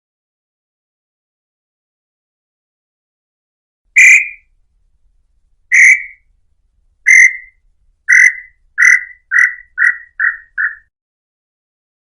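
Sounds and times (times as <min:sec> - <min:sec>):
bird singing short notes: 0:04.0 - 0:04.5, 0:05.7 - 0:06.3, 0:07.1 - 0:10.9.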